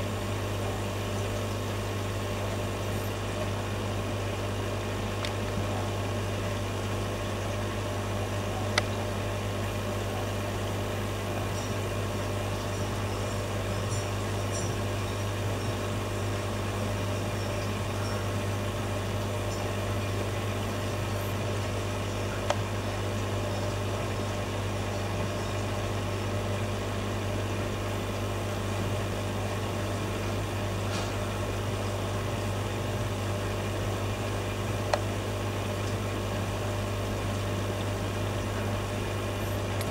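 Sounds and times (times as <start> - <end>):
aquarium equipment hum: 0.0 - 39.9.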